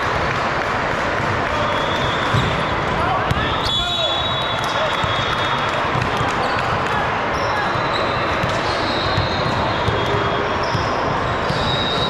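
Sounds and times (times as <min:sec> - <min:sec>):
hubbub of voices: 0:00.0 - 0:12.0
balls thudding on court: 0:02.3 - 0:02.6.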